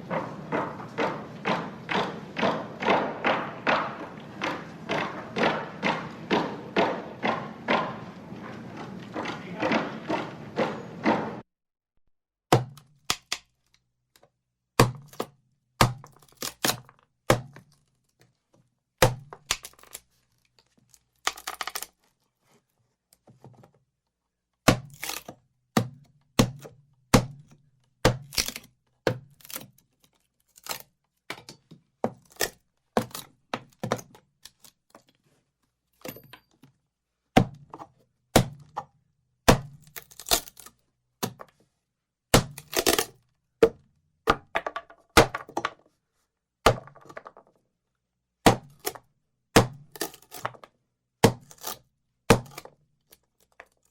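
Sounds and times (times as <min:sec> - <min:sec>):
scraping crunching burst: 0:00.0 - 0:11.4
sharp hard knocks with low ring: 0:00.0 - 0:11.4.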